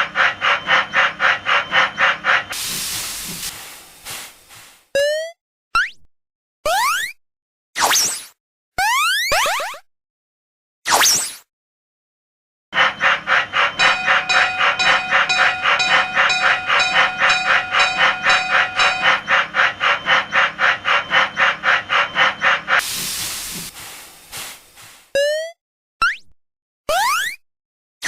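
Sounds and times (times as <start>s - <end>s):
steam locomotive chuffing: 0.0s - 4.9s, 12.8s - 25.1s
steam hissing: 2.5s - 4.9s, 21.4s - 25.1s.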